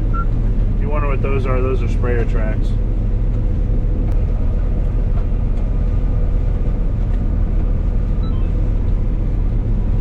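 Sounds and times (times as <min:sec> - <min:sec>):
combine harvester engine drone: 0:00.0 - 0:10.0.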